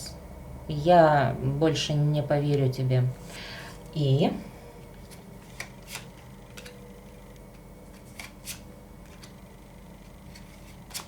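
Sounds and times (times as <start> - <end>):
cards tapping and flicking: 5.0 - 11.0.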